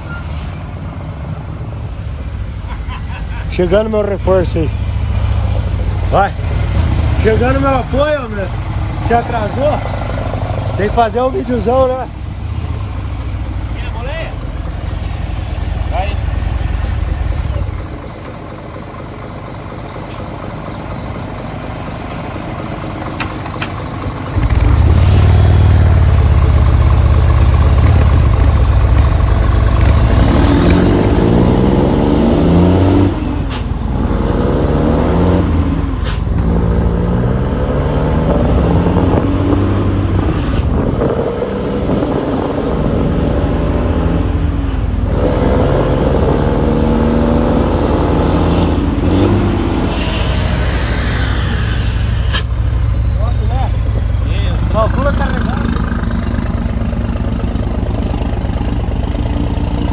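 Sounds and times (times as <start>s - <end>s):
truck diesel engine accelerating: 0.0s - 59.9s
air hisses at gear shifts: 48.9s - 52.7s.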